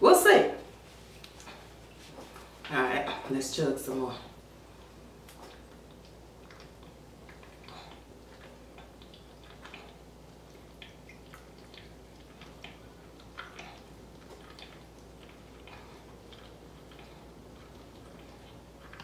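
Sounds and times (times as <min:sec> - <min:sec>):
low steady hum: 0:00.0 - 0:19.0
swallowing gulps: 0:05.3 - 0:19.0.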